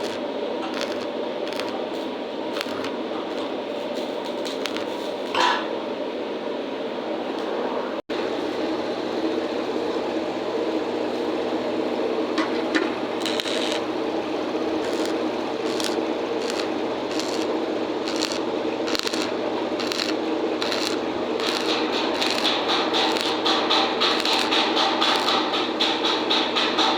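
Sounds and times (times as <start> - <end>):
welding arc crackling and hissing: 0.0 - 5.4, 12.9 - 26.9.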